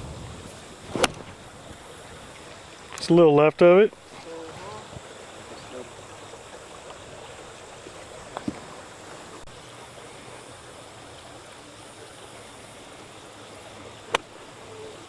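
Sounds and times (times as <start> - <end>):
outdoor background hiss: 0.0 - 15.0
golf club striking ball: 0.9 - 1.7.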